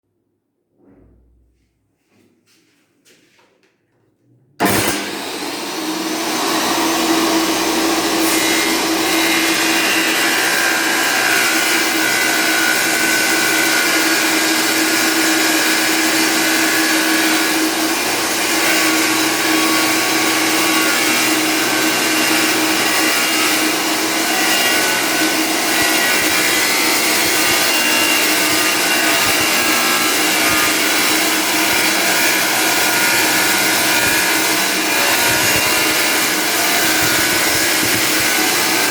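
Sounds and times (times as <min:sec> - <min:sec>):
tile saw cutting tile: 0:04.6 - 0:38.9.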